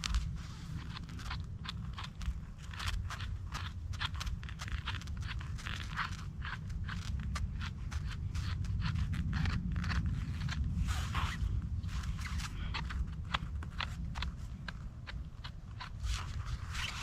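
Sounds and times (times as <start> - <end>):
low rumble: 0.0 - 17.0.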